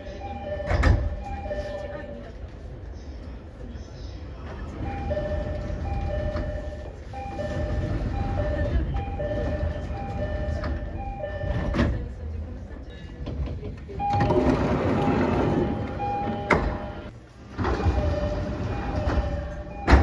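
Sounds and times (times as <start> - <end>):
two-note electronic door chime: 14.1 - 17.1.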